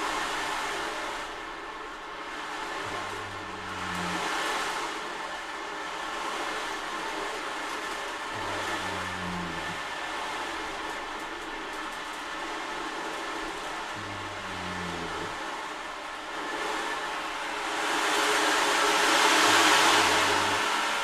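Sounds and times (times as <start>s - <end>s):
dog snoring: 2.6s - 5.3s, 8.3s - 9.9s, 13.6s - 17.2s, 18.7s - 21.0s
steady rushing noise: 12.5s - 21.0s.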